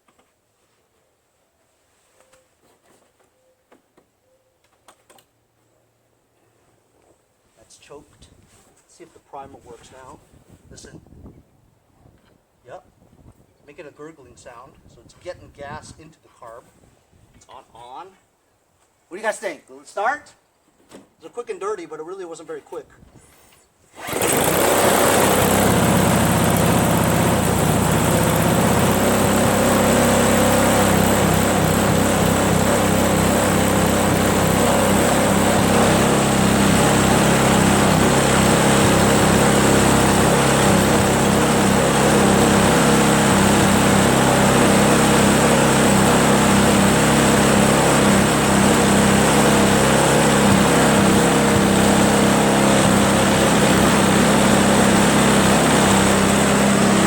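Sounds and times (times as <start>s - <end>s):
snowblower engine starting and running: 23.9s - 57.0s.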